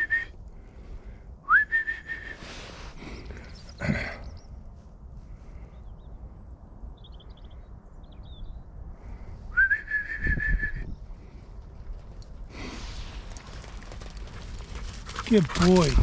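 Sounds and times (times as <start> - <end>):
whistle: 0.0 - 0.3, 1.5 - 2.6, 9.5 - 10.9.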